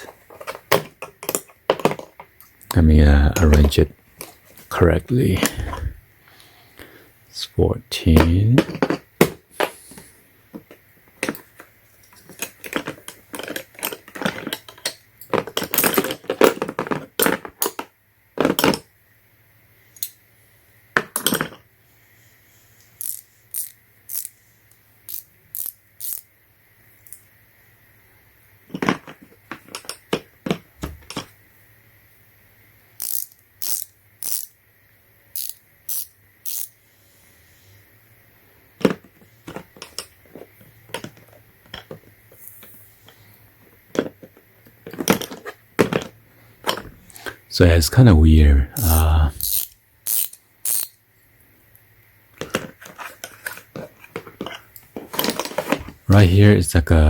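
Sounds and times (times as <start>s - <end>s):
wrenches knocking into plastic case: 0.0s - 2.3s, 8.2s - 11.6s, 12.2s - 18.8s, 43.9s - 47.0s
metal wrenches clinking: 12.1s - 17.8s, 21.1s - 21.6s, 38.8s - 40.2s.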